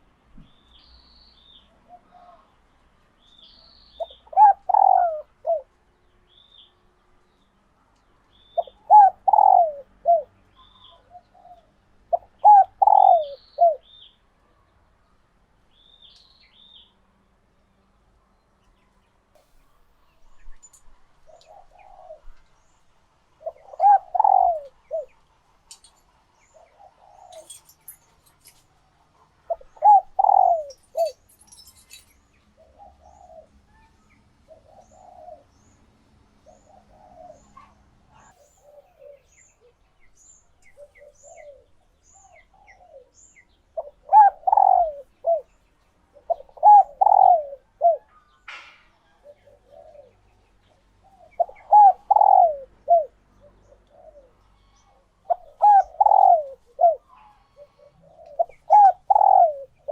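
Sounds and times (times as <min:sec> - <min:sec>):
dove cooing: 0:04.0 - 0:05.7, 0:08.6 - 0:13.9, 0:21.3 - 0:22.4, 0:23.4 - 0:25.2, 0:26.5 - 0:27.7, 0:29.4 - 0:31.3, 0:32.6 - 0:33.6, 0:34.4 - 0:35.7, 0:36.4 - 0:39.7, 0:40.8 - 0:43.2, 0:43.8 - 0:45.5, 0:46.1 - 0:48.1, 0:49.1 - 0:59.9
small bird chirping: 0:29.5 - 0:35.2.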